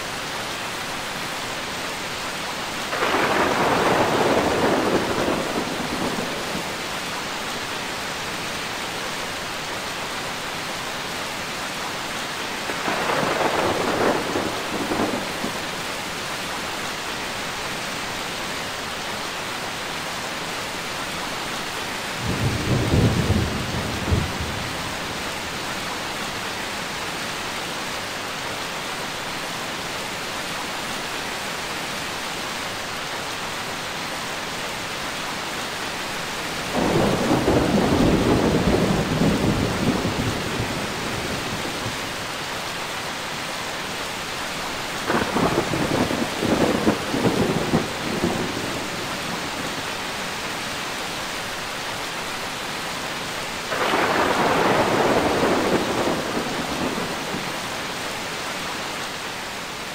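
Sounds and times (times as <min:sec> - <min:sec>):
heavy rain: 0:00.0 - 0:59.9
thunder rumbling: 0:02.9 - 0:06.8, 0:12.6 - 0:15.8, 0:22.2 - 0:25.3, 0:36.7 - 0:42.2, 0:45.0 - 0:49.8, 0:53.7 - 0:57.8.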